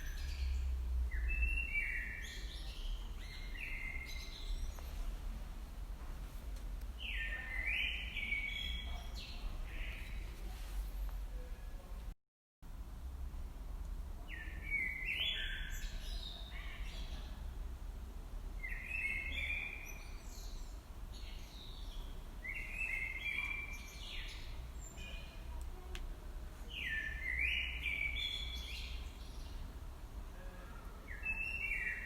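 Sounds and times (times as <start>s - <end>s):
low steady rumble: 0.0s - 7.4s, 12.7s - 14.4s
songbird chirping: 0.0s - 12.0s, 14.2s - 17.6s, 18.5s - 32.0s.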